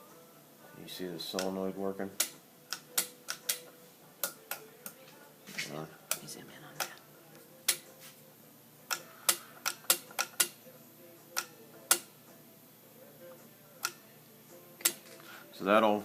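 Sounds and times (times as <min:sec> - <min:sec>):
solenoid snapping: 0:02.2 - 0:05.0
toggle switches clicking: 0:02.2 - 0:05.0, 0:08.9 - 0:10.6.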